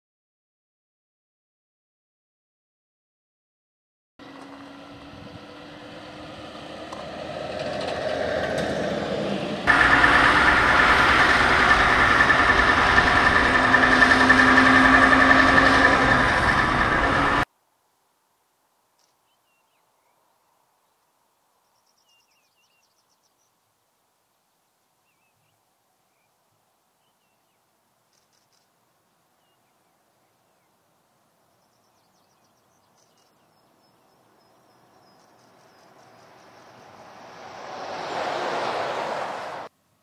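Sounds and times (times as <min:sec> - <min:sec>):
truck engine running: 0:04.2 - 0:17.4
faint bird chirps: 0:21.6 - 0:23.6, 0:31.4 - 0:37.0.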